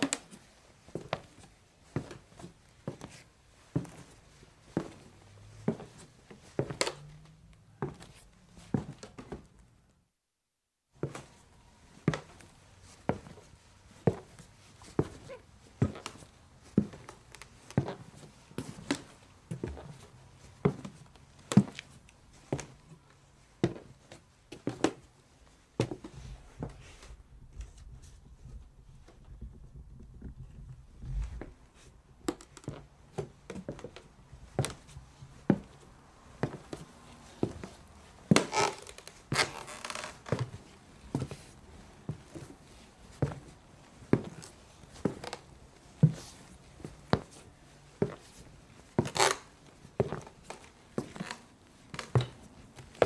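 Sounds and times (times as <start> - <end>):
footsteps on hollow wooden floor: 29.0 - 35.8, 36.4 - 42.6, 43.2 - 47.4, 50.0 - 53.0.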